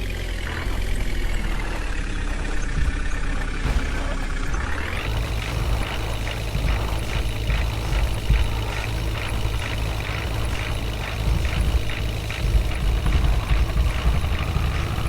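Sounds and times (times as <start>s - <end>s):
diesel engine revving: 0.0s - 15.0s.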